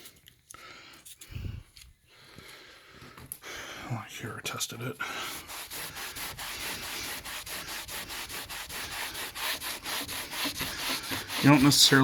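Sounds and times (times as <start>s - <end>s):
hand scraping wood finish: 5.2s - 12.0s.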